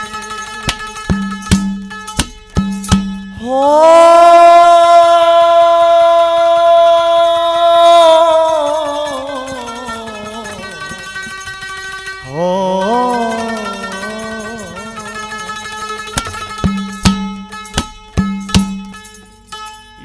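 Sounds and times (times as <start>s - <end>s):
devotional singing: 3.4s - 11.4s, 12.2s - 15.6s.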